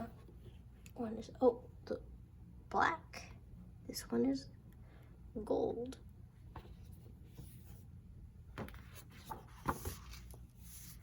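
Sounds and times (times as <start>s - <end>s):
rustling of journal pages: 8.6s - 11.0s.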